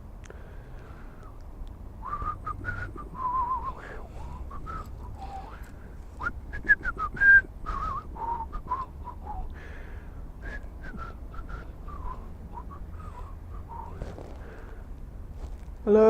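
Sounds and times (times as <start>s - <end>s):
low steady rumble: 0.0s - 16.0s
person whistling a tune: 2.0s - 5.6s, 6.2s - 9.5s, 10.4s - 14.0s.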